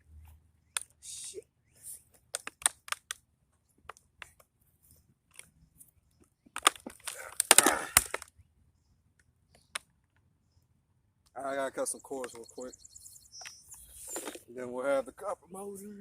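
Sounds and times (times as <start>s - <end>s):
plastic cracking and clattering: 6.5s - 8.3s.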